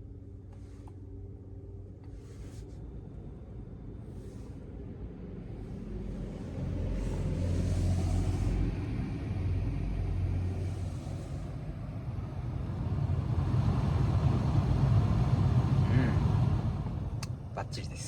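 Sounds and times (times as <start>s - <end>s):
air conditioning blower fan running: 10.1s - 18.0s.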